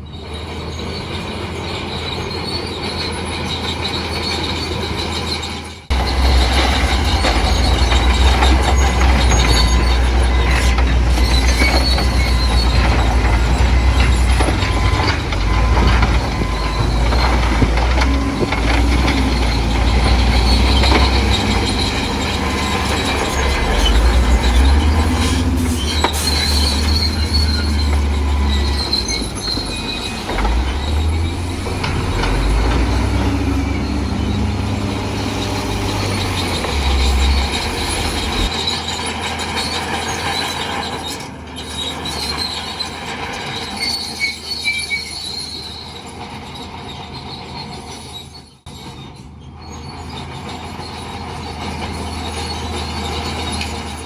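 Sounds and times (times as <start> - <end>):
diesel engine rumbling: 0.0 - 54.0
steel tracks squealing: 0.0 - 54.0.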